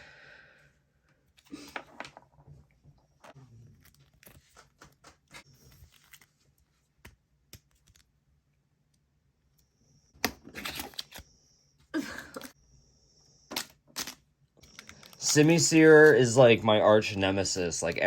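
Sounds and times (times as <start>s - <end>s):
foil pack and cards crinkling: 3.6s - 6.6s.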